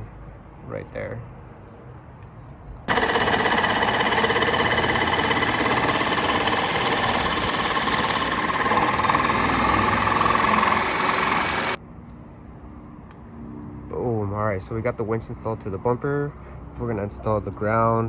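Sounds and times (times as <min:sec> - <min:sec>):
handheld power tool running: 0:02.9 - 0:11.8.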